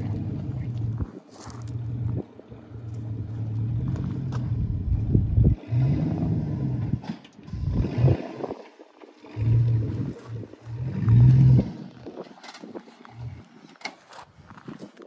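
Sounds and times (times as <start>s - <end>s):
vehicle engine revving: 0.0s - 12.1s.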